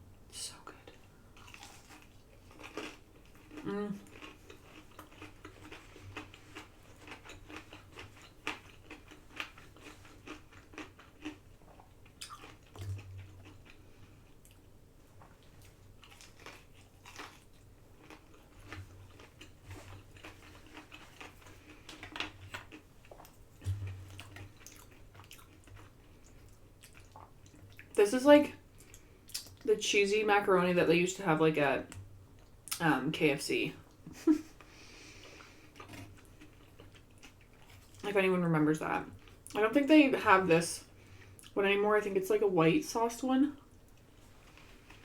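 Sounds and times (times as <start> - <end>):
person chewing food: 1.1 - 28.0, 28.7 - 29.6, 33.9 - 38.0.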